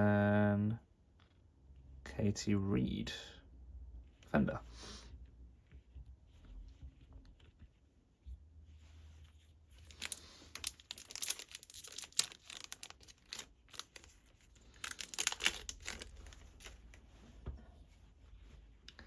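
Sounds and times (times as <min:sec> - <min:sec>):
packaging crinkling and rustling: 0:09.7 - 0:17.4.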